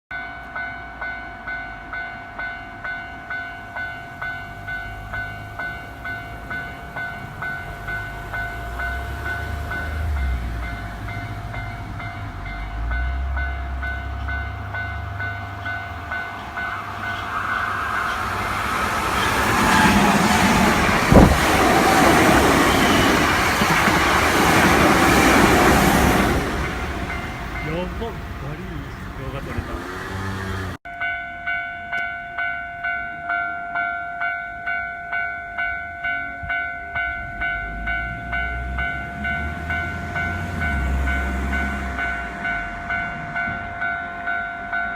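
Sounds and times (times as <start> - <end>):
train passing: 0.1 - 31.1, 32.4 - 44.9
level crossing bell dinging: 26.6 - 29.4.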